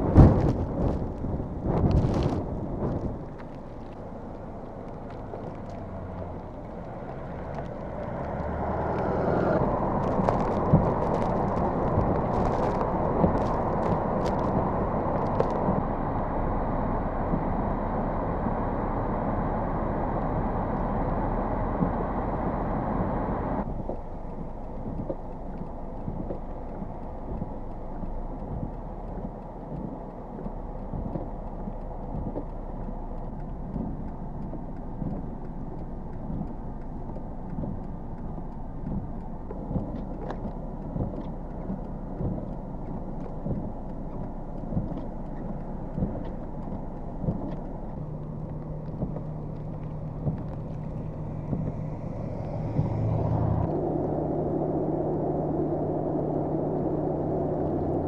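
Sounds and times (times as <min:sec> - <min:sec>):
passing traffic rush: 0:00.0 - 0:58.0.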